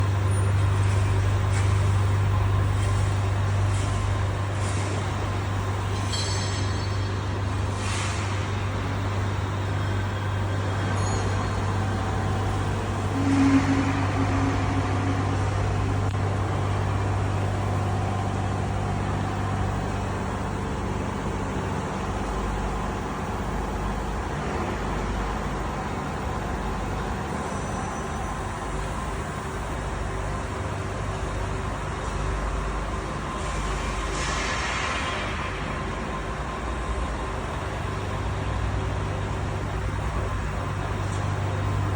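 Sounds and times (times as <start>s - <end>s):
welding machine electrical hum: 0.0s - 41.9s
brief tone: 6.0s - 8.0s, 10.0s - 16.2s.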